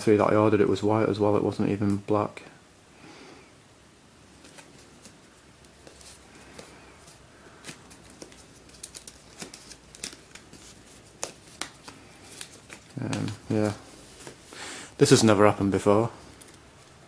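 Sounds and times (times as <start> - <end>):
packaging clicks and crinkles: 4.4 - 14.4, 16.2 - 17.0.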